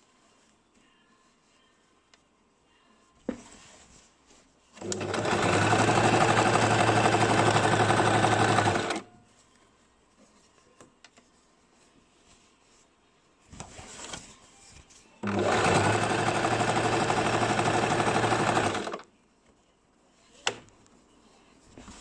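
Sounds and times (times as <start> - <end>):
electric sewing machine stitching: 4.8 - 9.1, 15.2 - 19.0.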